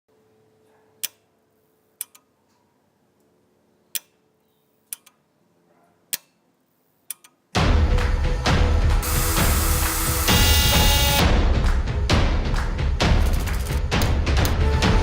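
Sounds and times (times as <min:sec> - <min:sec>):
television clicking: 0:13.1 - 0:14.6.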